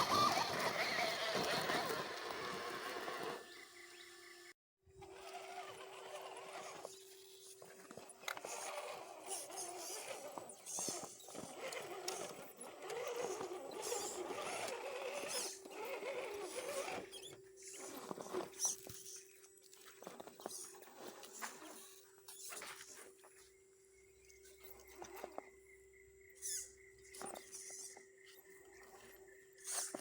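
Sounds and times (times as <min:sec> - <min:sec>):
electric motor whining: 0:00.0 - 0:19.1.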